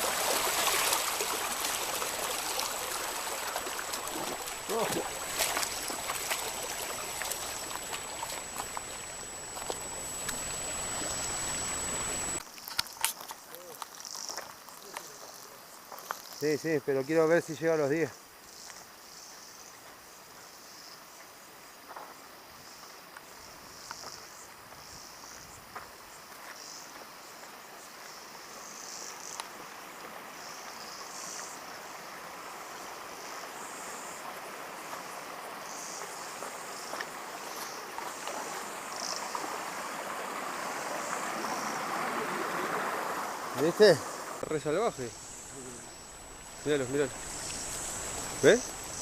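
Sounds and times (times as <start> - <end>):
rushing water: 0.0 - 12.4, 38.0 - 49.0
insects chirping: 0.0 - 17.4, 18.0 - 49.0.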